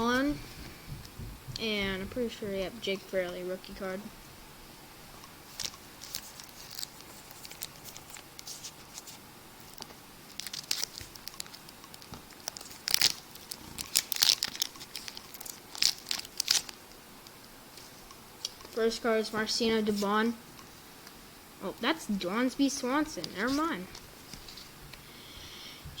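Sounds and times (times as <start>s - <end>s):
foil wrapper crinkling: 5.5s - 17.0s.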